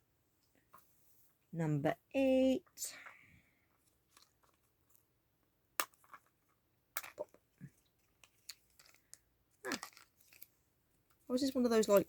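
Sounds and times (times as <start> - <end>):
plastic capsule clicks and crackles: 5.8 - 10.5.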